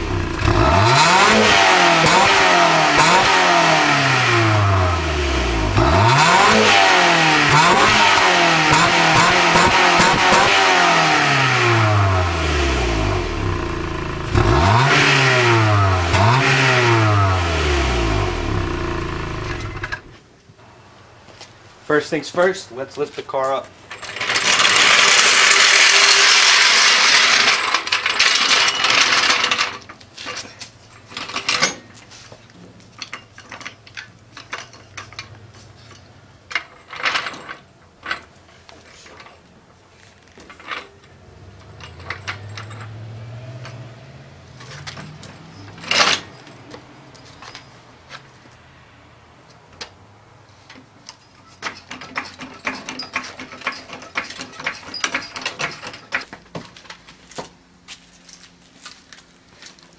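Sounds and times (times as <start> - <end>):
low hum rising in pitch: 0.0 - 1.2
metal clicks and clanks: 23.4 - 39.5, 40.1 - 43.8, 44.6 - 47.8, 50.7 - 57.2.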